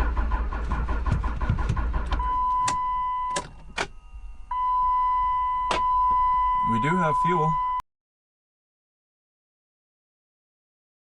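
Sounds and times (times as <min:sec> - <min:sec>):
starter motor cranking engine: 0:00.0 - 0:02.3
steady high beep tone: 0:02.2 - 0:07.8.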